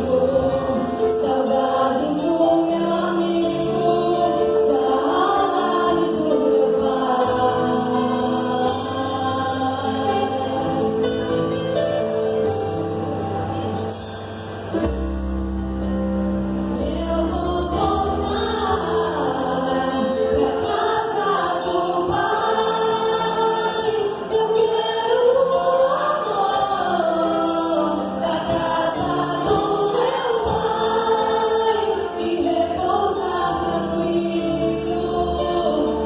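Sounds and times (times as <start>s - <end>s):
group singing gospel song: 0.0s - 11.3s, 16.8s - 36.0s.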